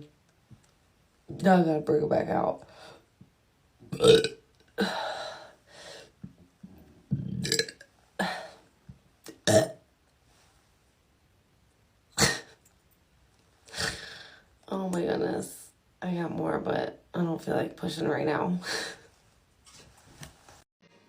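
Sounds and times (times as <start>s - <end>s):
woman burping: 3.9s - 5.0s, 7.1s - 8.6s, 9.3s - 9.8s, 12.2s - 12.6s.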